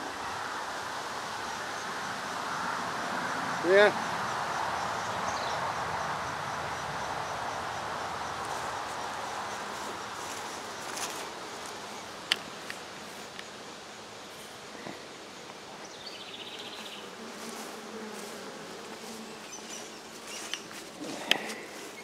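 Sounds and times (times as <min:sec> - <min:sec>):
bees buzzing in hive: 0:08.0 - 0:22.0.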